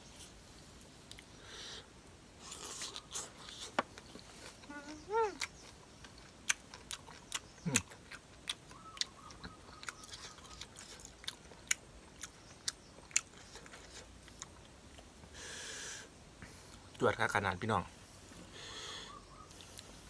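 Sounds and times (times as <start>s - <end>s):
person chewing crunchy food: 2.4s - 15.1s.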